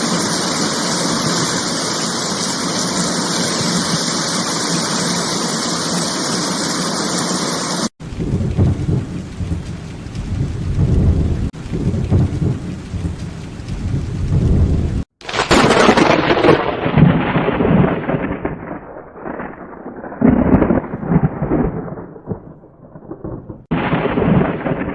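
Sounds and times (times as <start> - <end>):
heavy rain hiss: 0.0 - 15.1
loud thunderclap: 8.0 - 24.9
thunder rumbling: 8.0 - 24.9.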